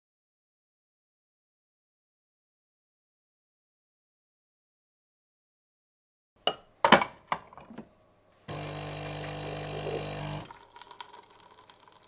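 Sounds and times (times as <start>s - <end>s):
coffee machine humming: 8.5s - 12.0s.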